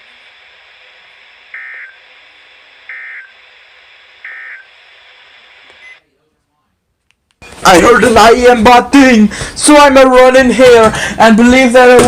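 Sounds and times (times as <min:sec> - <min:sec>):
radio hiss: 0:00.0 - 0:06.1.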